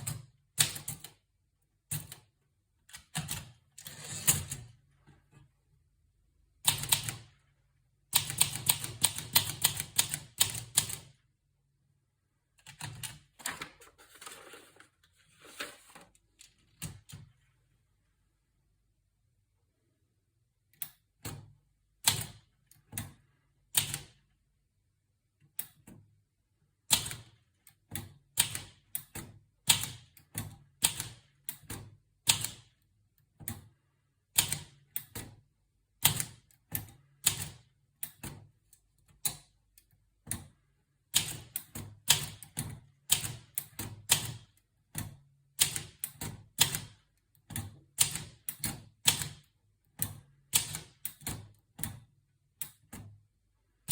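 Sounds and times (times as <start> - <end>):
typewriter keys typing: 8.2 - 11.1.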